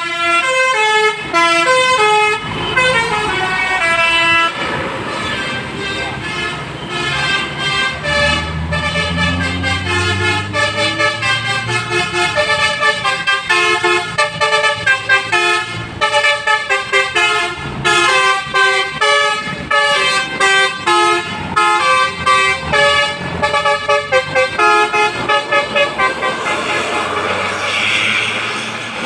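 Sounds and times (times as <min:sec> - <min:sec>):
bus engine rumbling: 0:00.0 - 0:29.0
musical air horn tune: 0:05.1 - 0:27.9.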